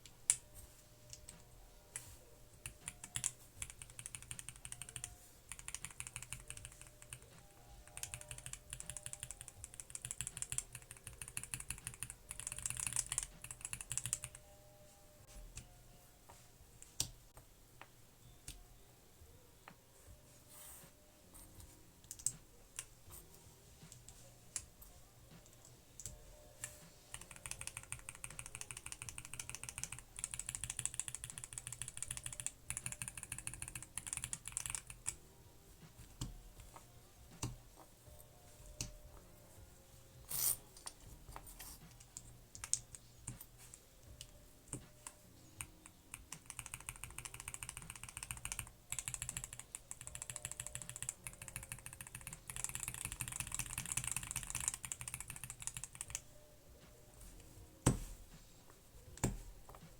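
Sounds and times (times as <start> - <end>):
typing on mechanical keyboard: 2.0 - 14.4, 27.1 - 35.2, 41.9 - 56.2.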